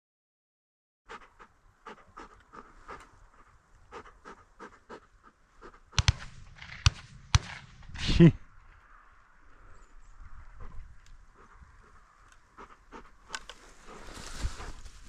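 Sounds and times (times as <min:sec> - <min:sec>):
dog panting rapidly: 0:01.1 - 0:06.4, 0:11.4 - 0:14.9
sharp loud clicks: 0:06.0 - 0:08.0.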